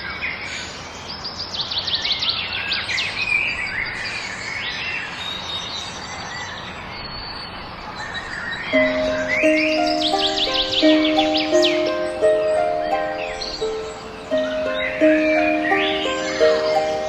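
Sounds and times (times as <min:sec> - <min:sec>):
birds singing and chirping: 0:01.1 - 0:17.0
steady background hiss: 0:08.7 - 0:17.0.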